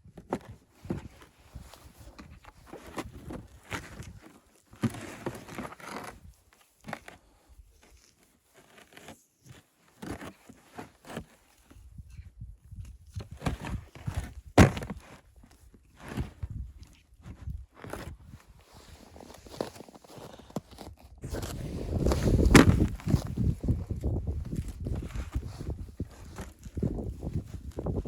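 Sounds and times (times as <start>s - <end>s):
crunching and knocking handling noises: 0.1s - 7.2s, 7.8s - 28.0s.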